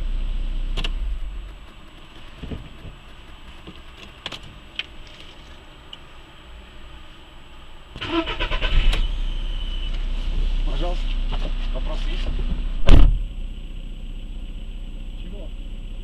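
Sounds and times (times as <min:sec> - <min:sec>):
car engine running: 0:00.0 - 0:16.0
sharp clicks: 0:00.7 - 0:04.9
engine cranking and starting: 0:08.0 - 0:09.4
high whistle: 0:08.1 - 0:10.1.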